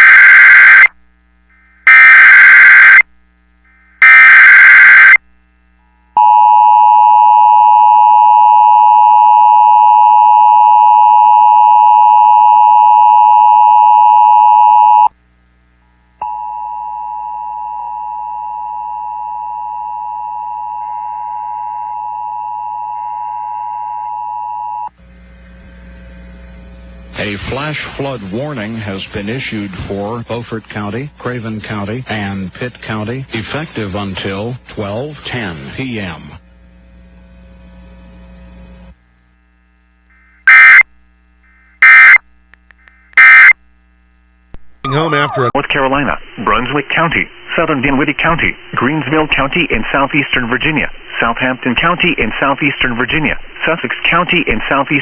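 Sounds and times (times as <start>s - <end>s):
two-tone attention signal: 40.5s - 40.8s, 43.2s - 43.5s
steady weather alert tone: 44.8s - 45.6s.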